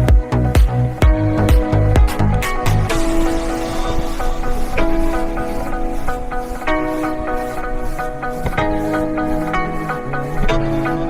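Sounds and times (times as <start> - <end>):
kick drum beat: 0.0 - 2.7
sustained synth notes: 0.0 - 11.0.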